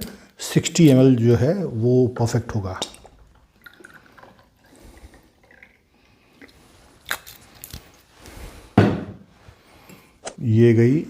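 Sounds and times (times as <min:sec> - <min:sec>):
liquid pouring into a glass: 0:02.9 - 0:06.6
sharp knock: 0:08.8 - 0:09.2.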